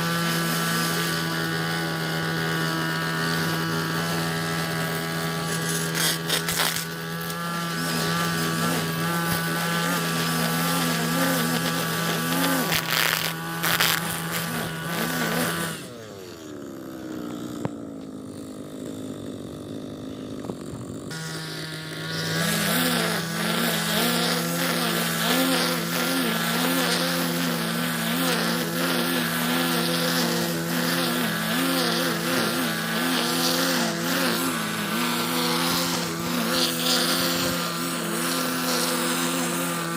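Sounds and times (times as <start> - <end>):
string trimmer engine cutting grass: 0.0 - 39.9.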